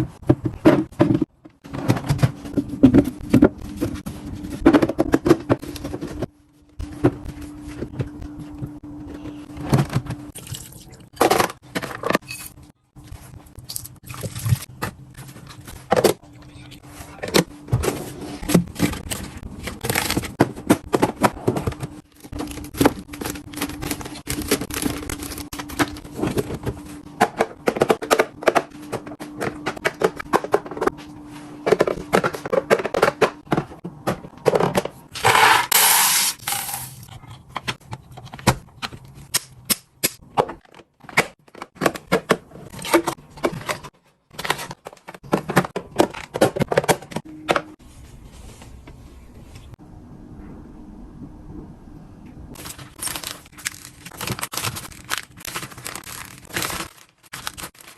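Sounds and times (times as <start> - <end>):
plastic containers clattering: 0.0 - 6.3, 40.3 - 47.7.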